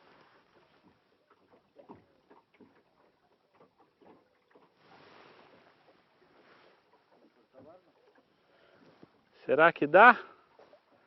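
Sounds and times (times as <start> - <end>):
faint clicks and knocks: 0.6 - 4.8.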